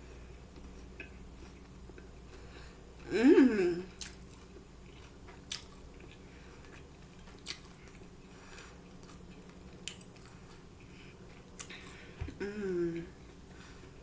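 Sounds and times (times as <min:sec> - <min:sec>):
mouth chewing crunchy chicken: 0:03.9 - 0:12.2.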